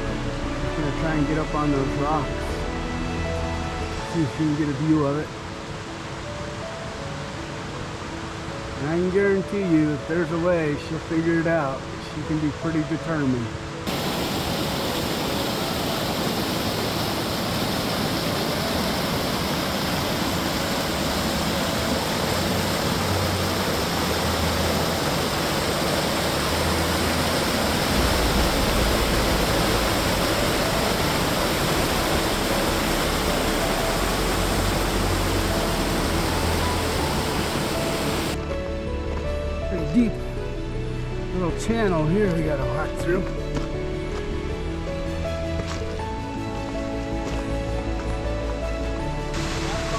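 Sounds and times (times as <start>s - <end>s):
waterfall and creek rushing: 0.0s - 49.9s
low rumble: 22.8s - 41.3s.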